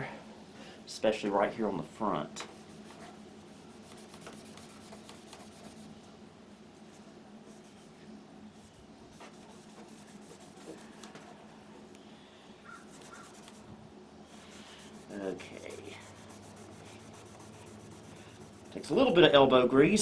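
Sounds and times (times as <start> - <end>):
eraser rubbing on plastic: 2.4 - 5.9, 9.1 - 11.4, 12.7 - 13.7, 14.3 - 19.2.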